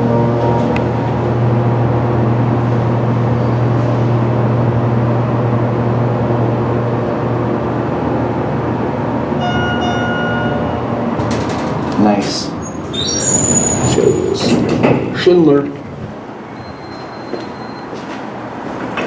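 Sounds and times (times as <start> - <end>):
high tone: 0.0 - 2.2, 9.3 - 11.1
elevator low hum: 0.0 - 19.0.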